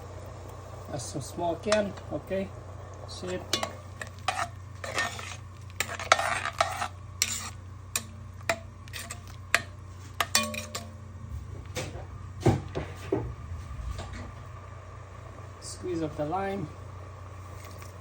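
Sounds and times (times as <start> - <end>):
metal spoon clinking on pot: 3.5 - 5.0, 5.8 - 11.0.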